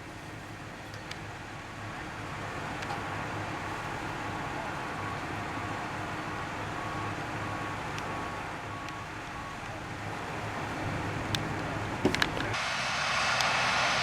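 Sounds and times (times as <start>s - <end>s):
vehicles rumbling: 0.0s - 14.0s
wind: 0.0s - 14.0s
faint high beep: 6.8s - 9.8s.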